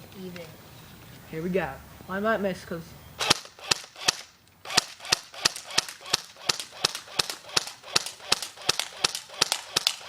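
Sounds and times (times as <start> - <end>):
airsoft rifle shots: 3.2 - 10.0.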